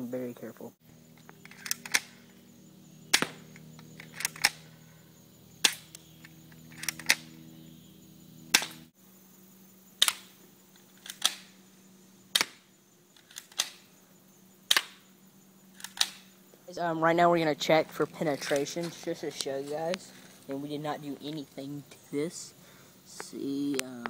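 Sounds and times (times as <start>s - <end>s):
faint steady hum: 0.0s - 24.0s
airsoft gun shots: 3.1s - 3.6s, 5.6s - 6.0s, 8.5s - 8.9s, 12.3s - 12.6s, 14.7s - 15.0s.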